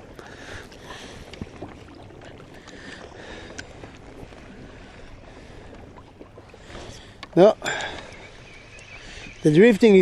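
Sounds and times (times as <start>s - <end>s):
water lapping against kayak hull: 0.0s - 10.0s
faint ticks: 2.5s - 4.1s, 6.7s - 9.0s.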